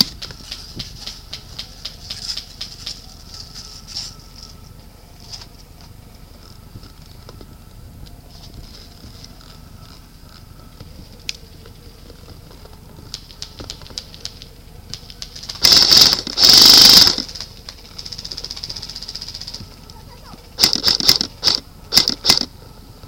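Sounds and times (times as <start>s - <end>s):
airsoft guns firing full auto: 15.4s - 19.5s, 20.6s - 22.5s.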